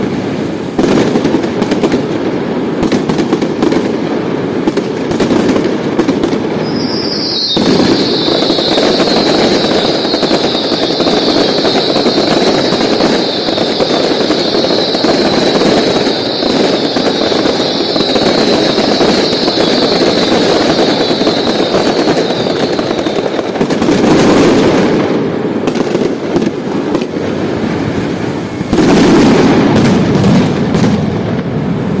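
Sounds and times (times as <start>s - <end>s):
firework bangs and crackles: 0.0s - 32.0s
high shrill whistle: 6.6s - 23.3s.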